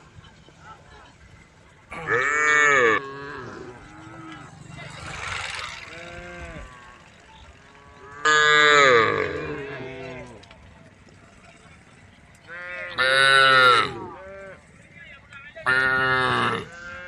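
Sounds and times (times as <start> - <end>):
cows mooing: 1.9 - 4.5, 5.1 - 10.4, 12.5 - 14.6, 15.7 - 17.0.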